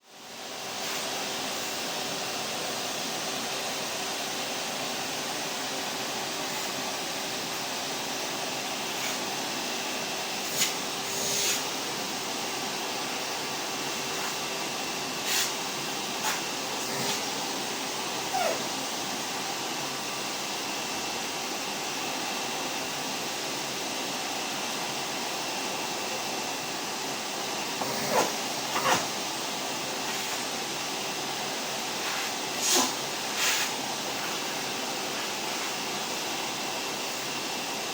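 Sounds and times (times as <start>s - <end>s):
vacuum cleaner running: 0.0s - 37.9s.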